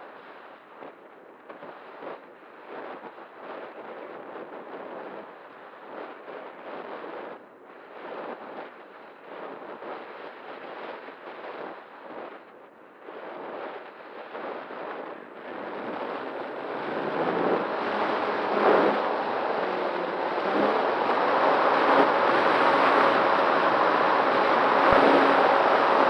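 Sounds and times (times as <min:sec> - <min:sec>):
wind rushing over microphone: 0:14.3 - 0:26.0.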